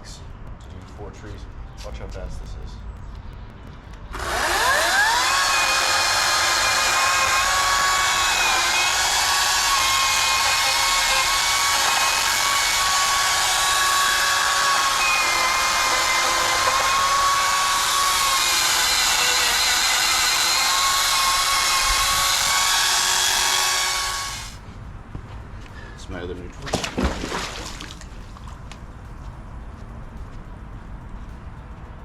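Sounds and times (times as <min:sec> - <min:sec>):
electric chainsaw cutting: 0:04.1 - 0:24.6.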